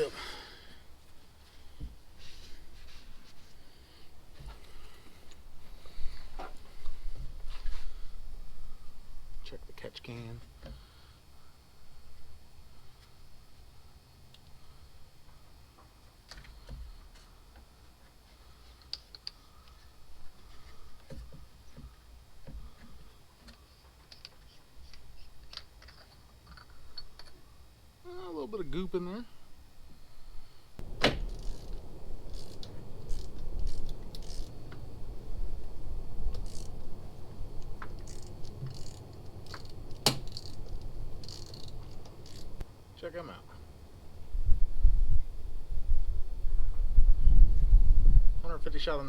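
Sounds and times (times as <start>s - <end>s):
parts clicking and rattling: 30.8s - 35.0s, 36.3s - 36.9s, 37.6s - 42.6s
low bumps: 30.8s - 42.6s
wind rumble on microphone: 30.8s - 42.6s, 44.2s - 48.8s.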